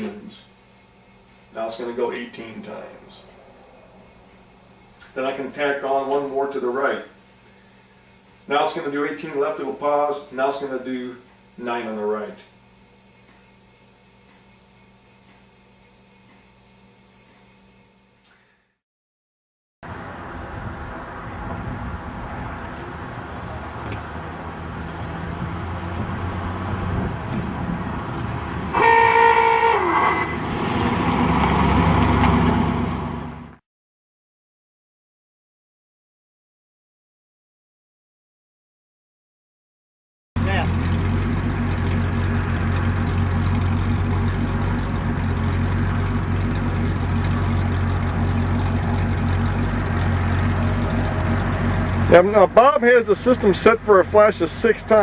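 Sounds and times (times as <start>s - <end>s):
vehicle noise: 0.0s - 8.6s, 19.8s - 33.6s, 40.4s - 55.0s
vehicle horn: 28.7s - 30.4s.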